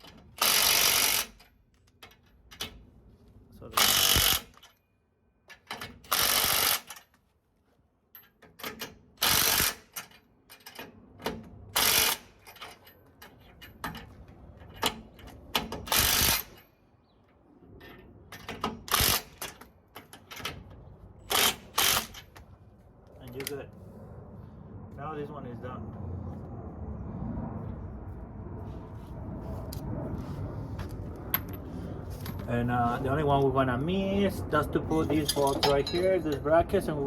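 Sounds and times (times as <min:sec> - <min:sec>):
power tool rasping bursts: 0:00.4 - 0:01.3, 0:03.8 - 0:04.6
metal parts clicking and knocking: 0:35.0 - 0:36.5.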